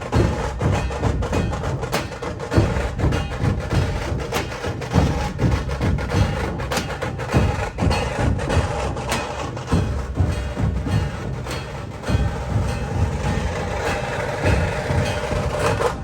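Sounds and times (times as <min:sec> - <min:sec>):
music with percussion beat: 0:00.0 - 0:16.0.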